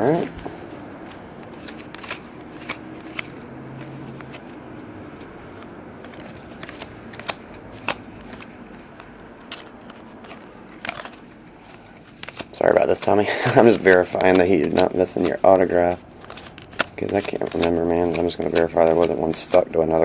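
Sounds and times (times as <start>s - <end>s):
cards being flipped through: 0.1s - 20.0s.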